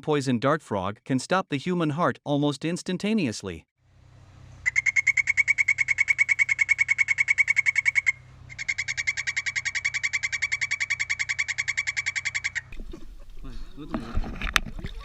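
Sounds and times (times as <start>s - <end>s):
frog trilling: 4.6s - 12.8s.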